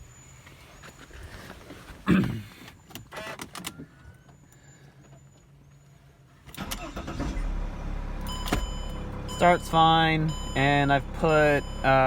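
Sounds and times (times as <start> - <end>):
car engine starting: 6.5 - 12.0.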